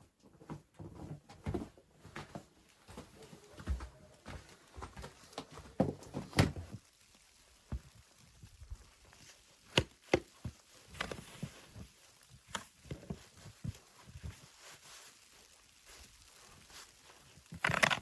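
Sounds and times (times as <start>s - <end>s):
rustling: 1.0s - 18.0s.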